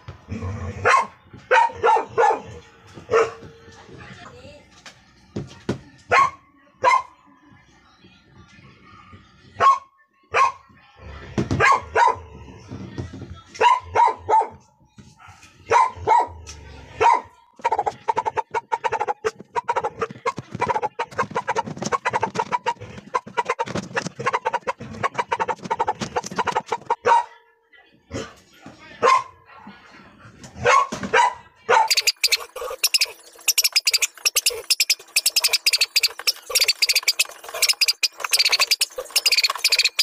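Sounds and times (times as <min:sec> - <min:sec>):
dog barking: 0:00.8 - 0:03.4, 0:06.1 - 0:07.2, 0:09.6 - 0:10.7, 0:11.5 - 0:12.3, 0:13.6 - 0:27.4, 0:29.0 - 0:29.4, 0:30.6 - 0:32.7.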